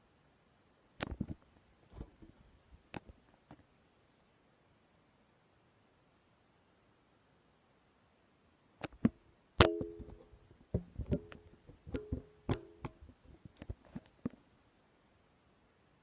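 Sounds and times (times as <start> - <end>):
hard objects knocking and clanking: 10.8 - 13.0.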